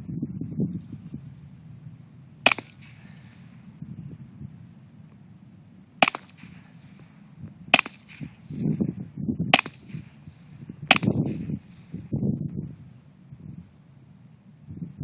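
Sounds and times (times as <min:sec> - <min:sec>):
suppressed pistol shots: 0:02.4 - 0:03.6, 0:06.0 - 0:08.6, 0:09.5 - 0:11.9.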